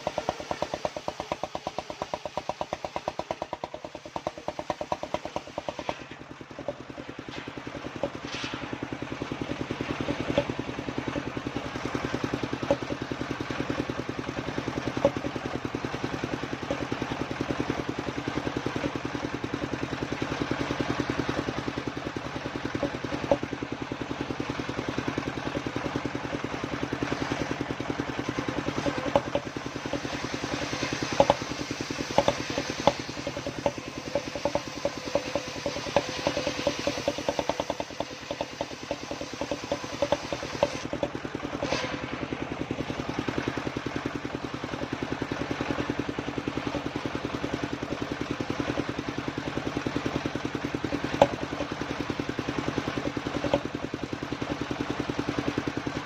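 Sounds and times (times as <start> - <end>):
sharp knocks and clacks: 0.0 - 21.7, 22.5 - 24.2, 24.8 - 42.0, 50.8 - 51.8, 52.6 - 53.8
engine driving circular saw: 0.0 - 56.0.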